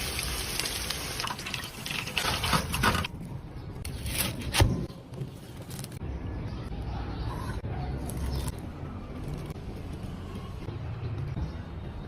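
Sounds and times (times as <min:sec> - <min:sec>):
liquid splashing and pouring: 0:00.0 - 0:02.8.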